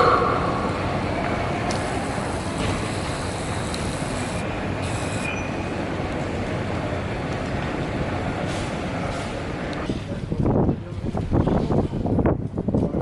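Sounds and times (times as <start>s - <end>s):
moving vehicle noise: 0.0s - 13.0s
faint brief squeal: 5.2s - 5.7s.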